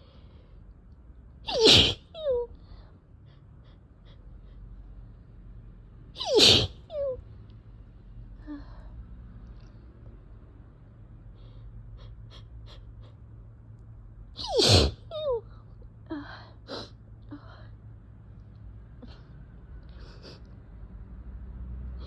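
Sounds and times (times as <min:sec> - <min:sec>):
person sneezing loudly: 0:01.5 - 0:02.1, 0:06.2 - 0:06.8, 0:14.4 - 0:15.1.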